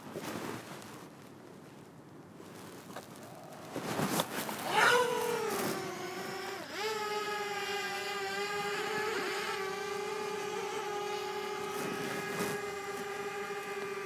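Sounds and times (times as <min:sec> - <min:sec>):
drone propellers whining: 0:03.3 - 0:14.0.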